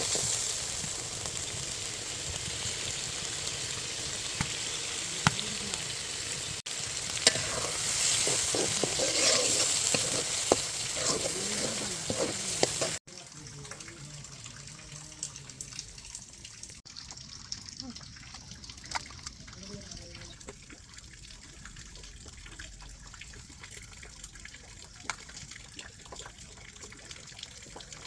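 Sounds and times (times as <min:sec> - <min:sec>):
sizzling in a pan: 0:00.0 - 0:13.1
spatula clicking and scraping: 0:07.2 - 0:13.0.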